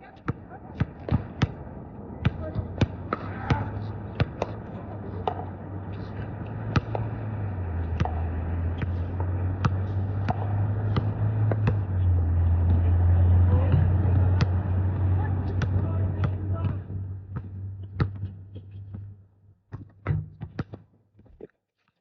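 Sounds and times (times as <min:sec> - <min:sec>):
basketball bouncing on hard court: 0:00.2 - 0:01.6, 0:02.2 - 0:11.9, 0:15.4 - 0:19.1.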